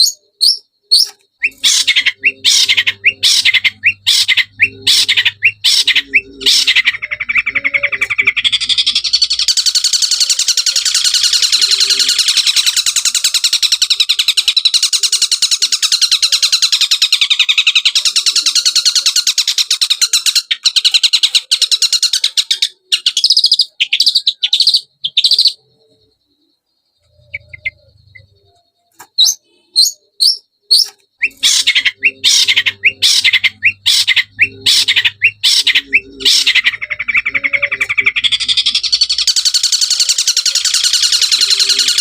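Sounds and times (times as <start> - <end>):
bird buzzy high trills: 27.0 - 42.0.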